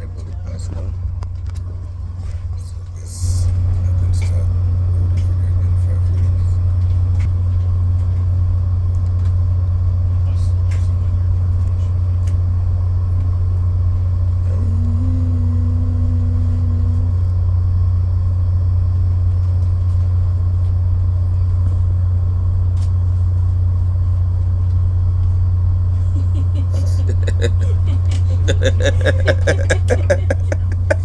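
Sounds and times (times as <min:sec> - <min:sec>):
train low drone: 0:00.0 - 0:31.0.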